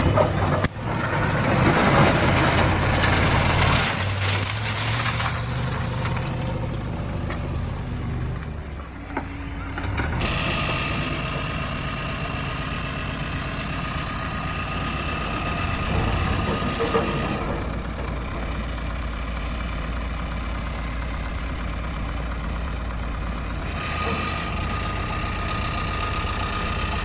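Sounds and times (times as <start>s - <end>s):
heavy diesel engine running: 0.0s - 27.0s.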